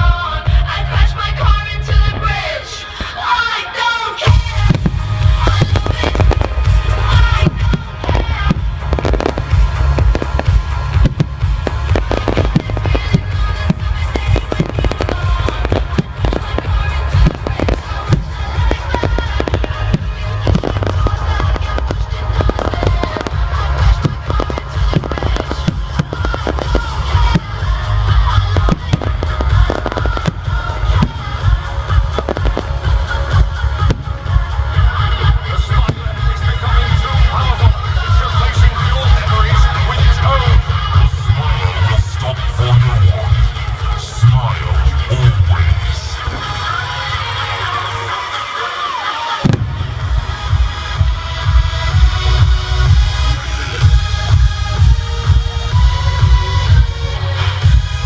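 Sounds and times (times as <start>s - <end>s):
music with heavy deep bass: 0.0s - 3.3s, 4.2s - 48.2s, 49.4s - 58.0s
fireworks bangs and crackles: 4.2s - 58.0s
low booms: 49.4s - 56.8s.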